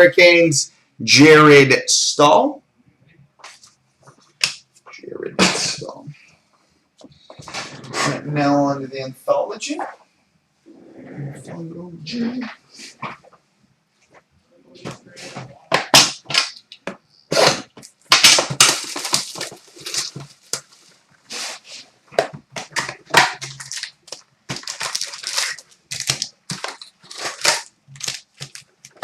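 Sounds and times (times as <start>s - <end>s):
cardboard and cards rustling: 14.8s - 29.0s
wrappers crinkling and tearing: 17.3s - 21.6s, 22.7s - 29.0s.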